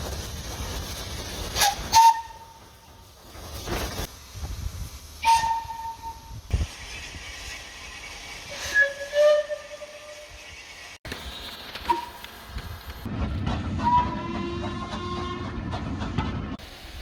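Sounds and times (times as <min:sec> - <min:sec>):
steady hiss: 0:00.0 - 0:08.8
locomotive horn blasts: 0:13.8 - 0:15.5.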